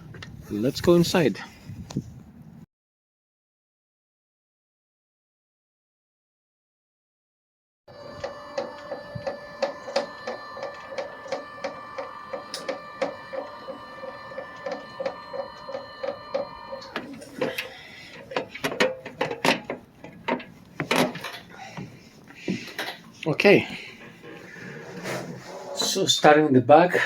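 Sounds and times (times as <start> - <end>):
small motor whirring: 7.9 - 17.7.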